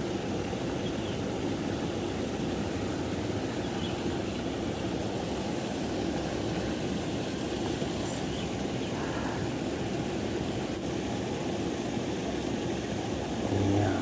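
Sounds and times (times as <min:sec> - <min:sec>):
river water rushing: 0:00.0 - 0:14.0.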